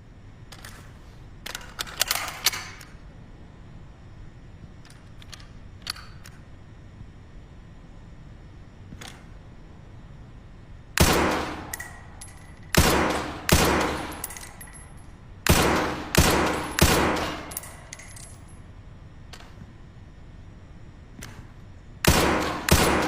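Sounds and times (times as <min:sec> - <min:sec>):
suppressed rifle shots: 0:11.0 - 0:11.9, 0:12.7 - 0:14.3, 0:15.4 - 0:17.6, 0:22.0 - 0:23.0.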